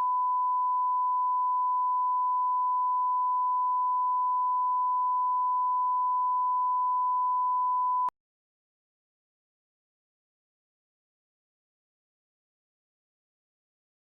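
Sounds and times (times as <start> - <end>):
sine test tone: 0.0 - 8.1.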